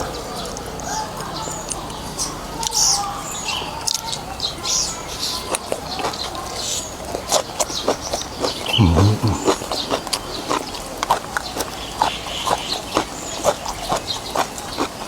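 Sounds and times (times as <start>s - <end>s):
person chewing: 5.4s - 15.0s
slurping noodles: 5.5s - 10.7s
wet mouth clicks and smacks: 7.2s - 11.2s.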